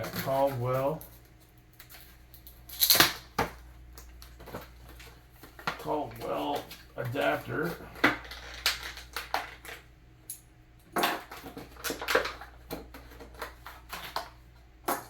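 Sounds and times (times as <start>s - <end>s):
packaging crackles and clicks: 8.2s - 9.8s.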